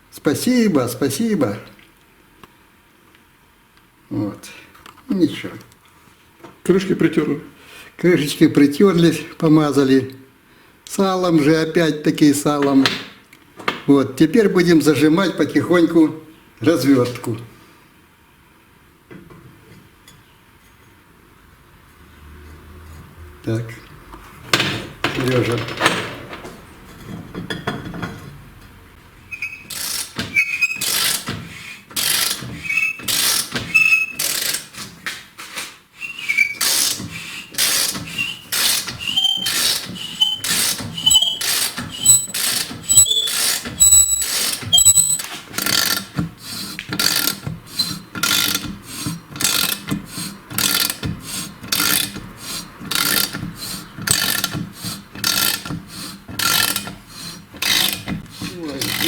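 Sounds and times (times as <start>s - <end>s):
squealing tone: 29.3s - 29.7s, 38.1s - 45.2s
reamer scraping metal: 36.1s - 59.0s.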